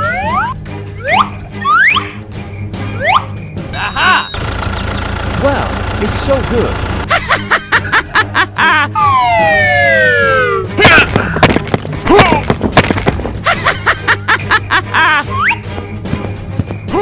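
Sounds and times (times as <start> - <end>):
background music: 0.0 - 17.0.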